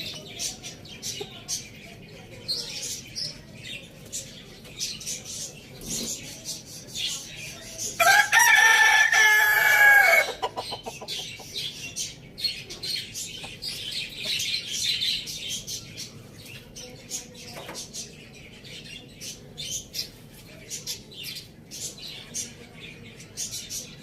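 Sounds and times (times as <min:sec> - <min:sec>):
small birds chirping: 0:00.0 - 0:24.0
rooster crowing: 0:08.0 - 0:10.5.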